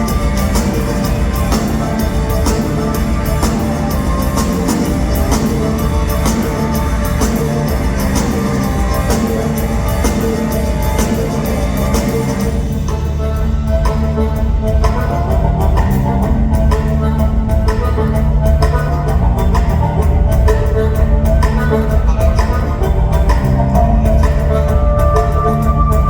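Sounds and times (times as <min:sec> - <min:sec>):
live rock band playing: 0:00.0 - 0:26.0
steady drum beat: 0:00.0 - 0:26.0.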